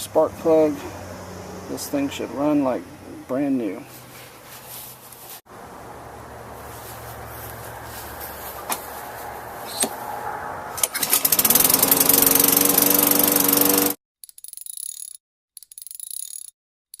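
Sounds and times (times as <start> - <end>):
lawn mower engine running: 5.5 - 14.0.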